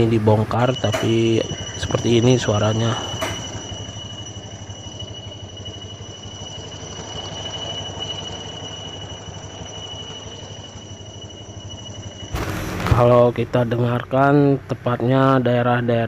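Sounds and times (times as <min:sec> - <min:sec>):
high-pitched whistle: 0:00.0 - 0:15.0.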